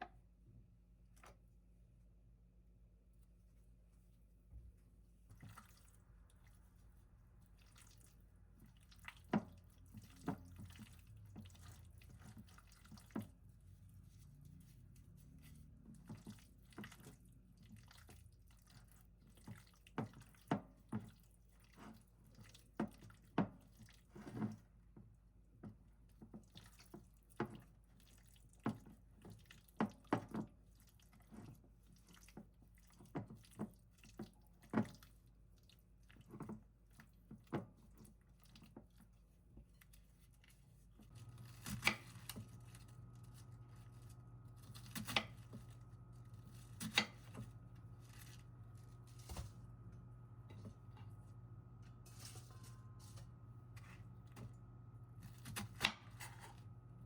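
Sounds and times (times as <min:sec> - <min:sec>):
low steady hum: 0:39.7 - 0:57.0.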